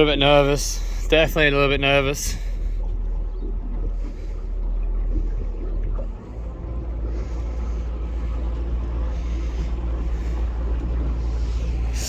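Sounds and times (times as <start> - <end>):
outboard motor droning: 0.0 - 12.0
wind and water hiss: 6.0 - 12.0.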